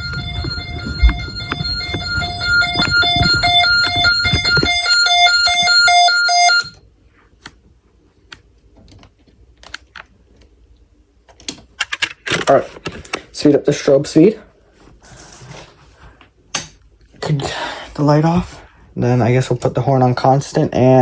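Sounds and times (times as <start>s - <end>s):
alarm speaker beeping: 0.0s - 6.8s.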